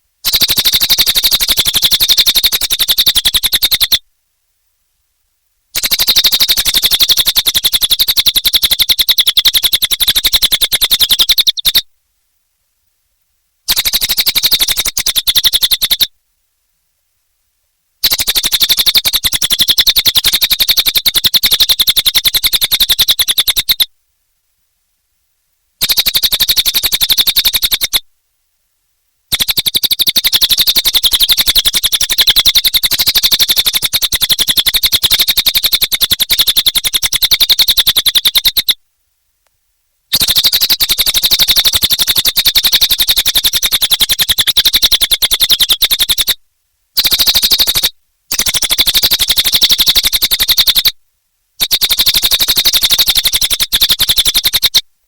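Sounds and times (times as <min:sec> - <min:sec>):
songbird trilling: 0:00.2 - 0:04.0, 0:05.8 - 0:11.9, 0:13.7 - 0:16.1, 0:18.0 - 0:23.9, 0:25.8 - 0:28.0, 0:29.3 - 0:38.8, 0:40.1 - 0:46.4, 0:47.0 - 0:50.9, 0:51.6 - 0:54.8.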